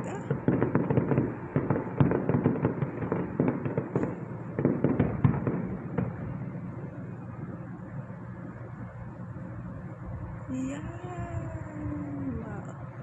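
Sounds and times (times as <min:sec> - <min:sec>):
fireworks bangs and crackles: 0:00.0 - 0:07.7.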